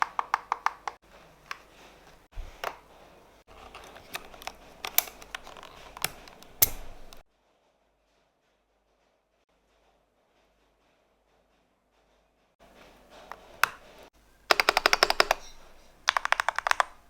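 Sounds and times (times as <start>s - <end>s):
mechanical keyboard typing: 0.0s - 1.0s, 3.6s - 7.2s, 14.5s - 17.0s.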